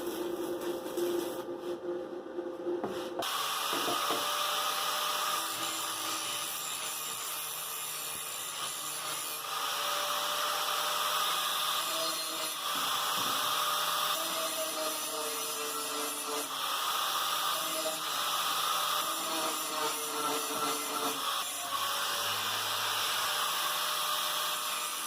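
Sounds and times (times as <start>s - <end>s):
power tool grinding steel: 3.2s - 25.0s.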